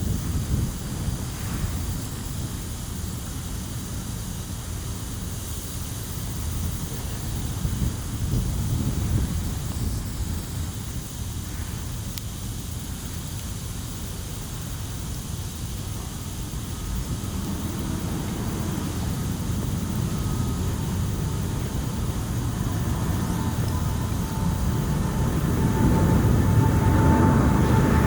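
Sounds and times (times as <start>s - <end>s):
jet aircraft rumbling: 14.5s - 28.0s.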